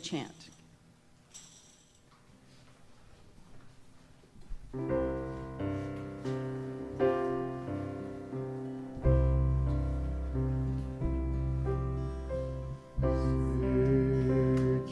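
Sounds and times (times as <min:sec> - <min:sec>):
keyboard chords: 0:04.8 - 0:14.9
deep bass note: 0:09.0 - 0:14.9.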